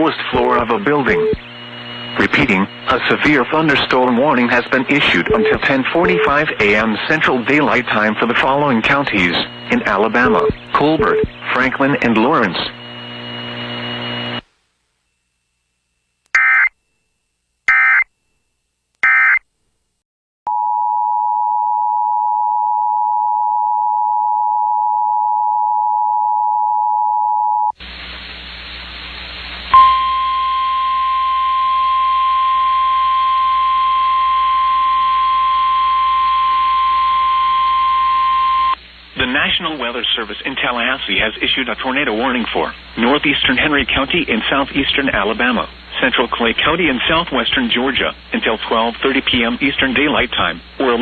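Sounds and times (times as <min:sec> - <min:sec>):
radio hiss and hum: 0:00.0 - 0:15.8, 0:27.8 - 0:30.3, 0:35.8 - 0:51.0
steady warning alarm tone: 0:00.6 - 0:01.5, 0:02.2 - 0:06.9, 0:07.5 - 0:13.8, 0:29.7 - 0:38.8
two-tone attention signal: 0:01.0 - 0:01.4, 0:05.2 - 0:06.4, 0:10.2 - 0:11.3, 0:29.8 - 0:38.8
digital data bursts: 0:05.0 - 0:06.9, 0:08.5 - 0:12.5.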